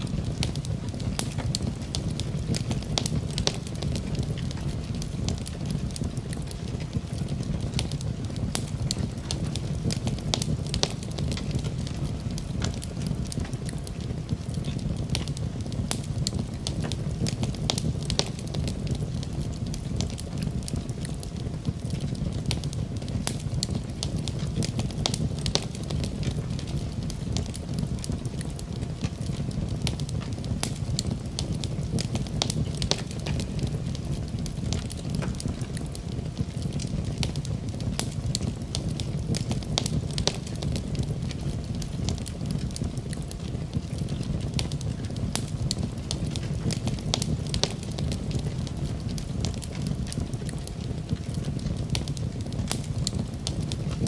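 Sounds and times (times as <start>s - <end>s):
wood fire crackling: 0.0s - 54.0s.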